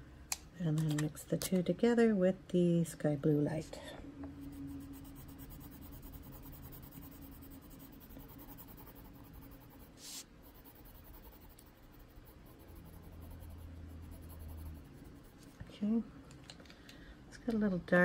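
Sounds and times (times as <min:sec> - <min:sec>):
pencil scratching on paper: 0:04.4 - 0:15.5.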